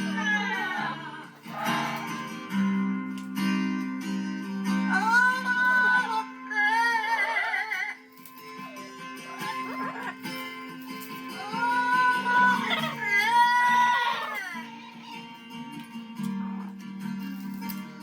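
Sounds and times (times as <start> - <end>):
person singing with vibrato: 0.0 - 2.6, 4.8 - 10.4, 11.1 - 15.6
strummed acoustic guitar: 0.0 - 18.0.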